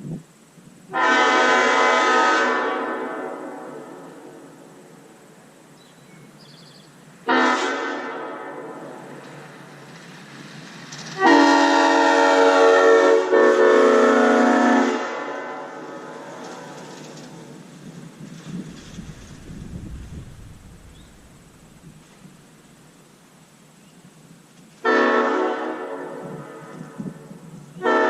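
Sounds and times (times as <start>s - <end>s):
locomotive air horn chord: 0.9s - 4.6s, 7.2s - 9.2s, 11.2s - 17.2s, 24.8s - 27.2s, 27.8s - 28.0s.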